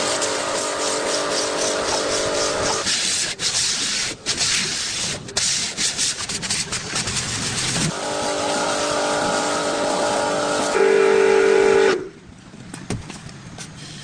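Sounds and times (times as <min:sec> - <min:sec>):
sanding scraping strokes: 0:00.0 - 0:10.8
engine running: 0:07.8 - 0:13.7.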